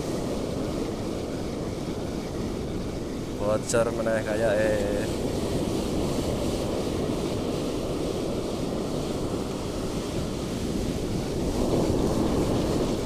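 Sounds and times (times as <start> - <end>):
wind buffeting microphone: 0.0 - 13.0
surf rolling onto beach: 2.7 - 13.0.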